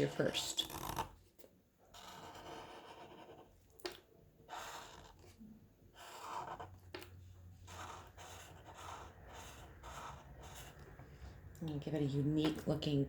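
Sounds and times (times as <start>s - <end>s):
marker scratching on paper: 0.0s - 1.2s, 1.9s - 3.7s, 4.4s - 11.0s.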